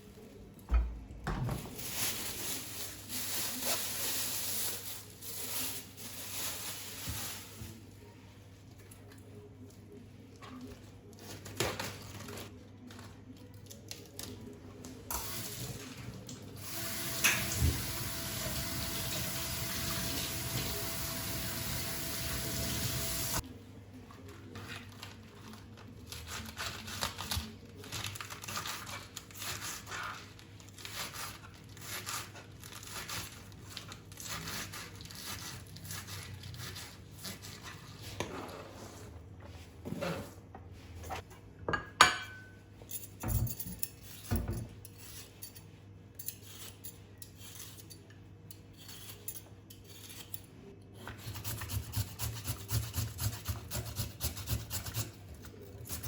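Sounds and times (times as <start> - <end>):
dishes and cutlery clinking: 41.7 - 48.1.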